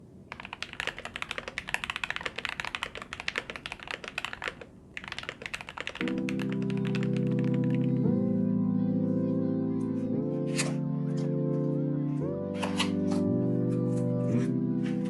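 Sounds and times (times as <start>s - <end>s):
fast typing on mechanical keyboard: 0.3s - 8.0s
music with held chords: 6.0s - 15.0s.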